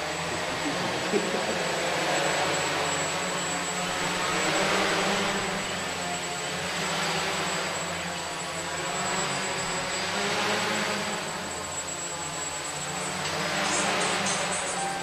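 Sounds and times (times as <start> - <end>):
model aircraft propellers whirring: 0.0 - 15.0.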